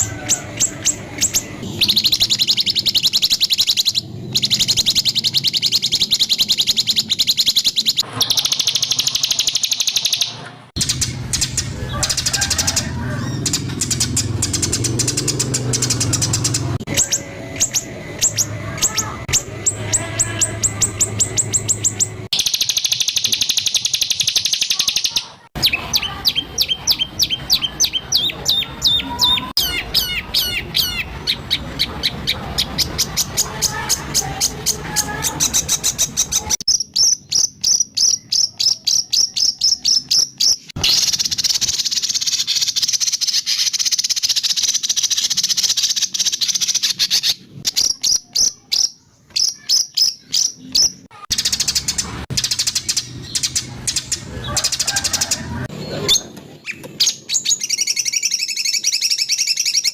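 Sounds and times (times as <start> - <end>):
buzzy harsh bird rattles: 0.0 - 25.5
songbird rapid sharp notes: 0.0 - 59.9.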